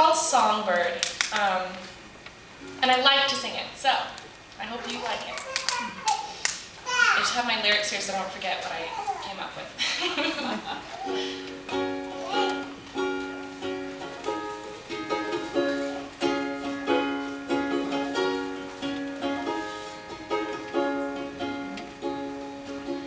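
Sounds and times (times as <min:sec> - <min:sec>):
ukulele strumming chords: 0:10.9 - 0:23.0.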